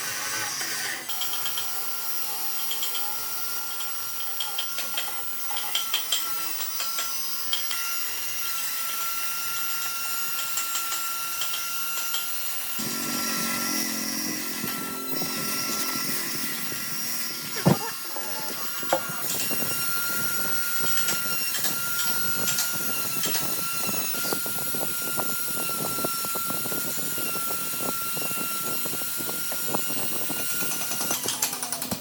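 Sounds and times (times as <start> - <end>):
power tool whining on wood: 0.0 - 32.0
low hum: 12.8 - 19.2.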